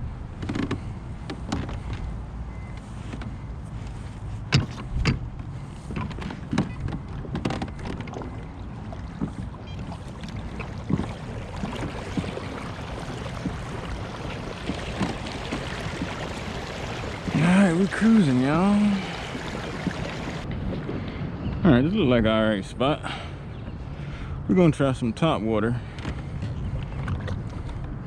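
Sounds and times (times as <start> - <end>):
kayak moving on water rumble: 0.0 - 21.6, 25.8 - 28.0
knocks from hull and gear: 0.4 - 2.1, 4.4 - 8.4, 13.3 - 17.4.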